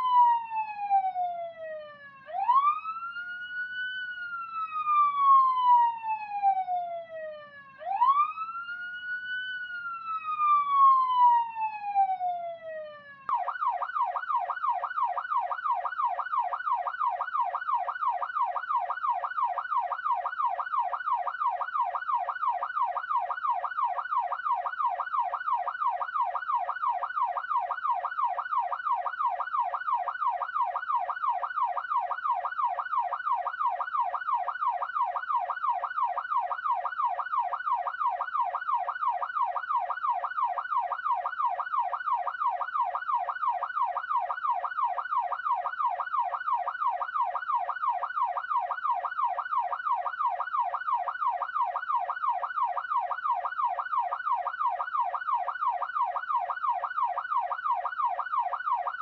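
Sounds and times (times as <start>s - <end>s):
police siren yelping: 0.0s - 59.0s.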